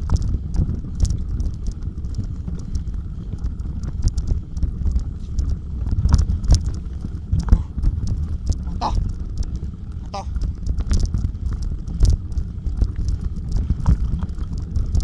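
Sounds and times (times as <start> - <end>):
bicycle clattering and rattling: 0.0 - 15.0
wind rumble on microphone: 0.0 - 15.0.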